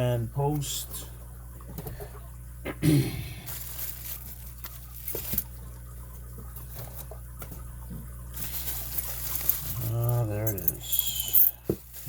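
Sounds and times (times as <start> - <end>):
wrapping rustling and tearing: 3.5 - 5.6, 8.3 - 12.0.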